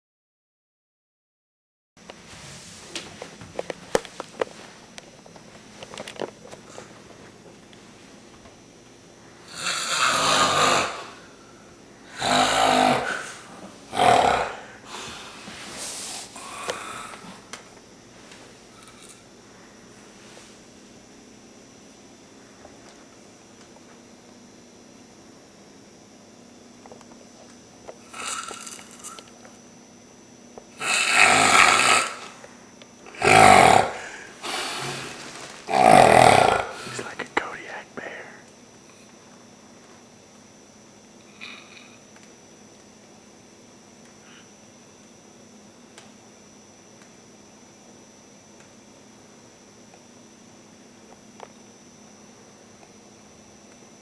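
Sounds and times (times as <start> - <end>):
man snoring loudly: 9.5 - 11.3, 12.1 - 15.4, 16.4 - 17.3, 28.1 - 28.8, 30.8 - 32.4, 33.1 - 37.1.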